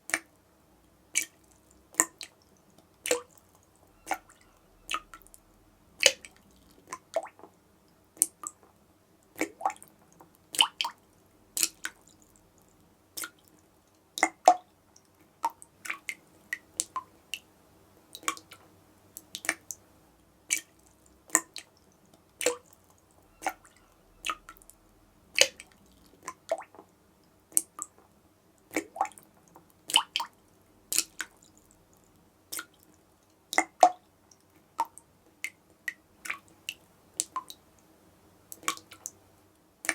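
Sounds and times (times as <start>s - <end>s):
water dripping from a tap: 1.2s - 5.4s, 6.0s - 7.5s, 9.4s - 11.0s, 11.6s - 17.5s, 18.1s - 19.8s, 20.5s - 24.8s, 25.4s - 26.9s, 28.6s - 37.9s, 38.5s - 39.2s.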